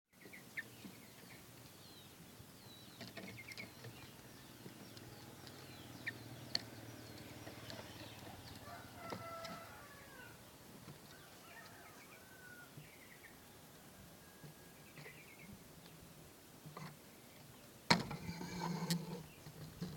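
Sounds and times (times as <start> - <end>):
small birds chirping: 0.1 - 19.9
rooster crowing: 8.3 - 10.4, 11.1 - 14.8.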